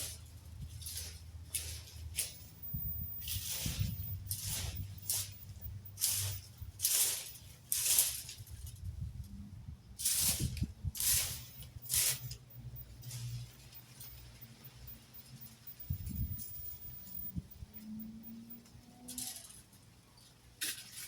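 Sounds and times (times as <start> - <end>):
rake scraping dry leaves: 6.0 - 8.5, 10.0 - 12.3.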